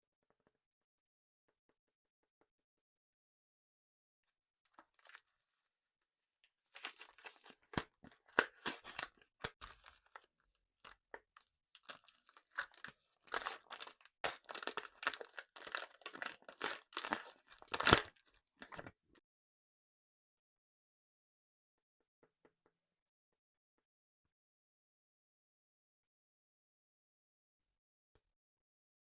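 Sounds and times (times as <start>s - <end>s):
candy crackling and crunching: 6.7s - 18.9s.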